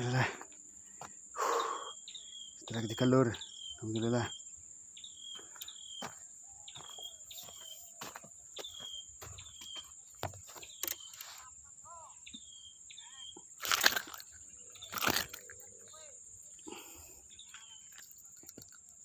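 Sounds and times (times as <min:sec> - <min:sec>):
high-pitched insect drone: 0:00.0 - 0:19.0
small bird chirping: 0:00.0 - 0:19.0.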